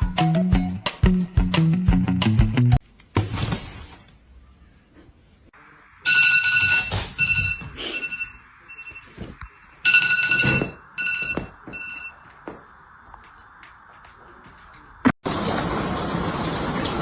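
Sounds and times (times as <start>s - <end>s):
electronic ringing tone: 6.0s - 9.1s, 9.8s - 12.2s.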